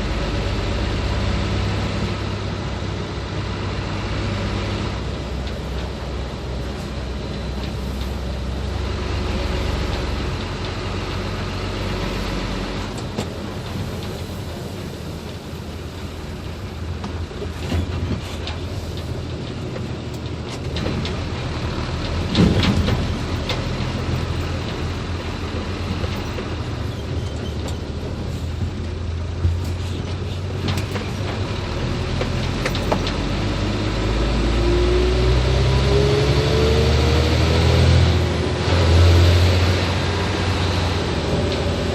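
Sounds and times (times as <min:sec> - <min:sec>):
truck diesel engine running: 0:00.0 - 0:41.9
knocks and rattles: 0:16.3 - 0:33.5.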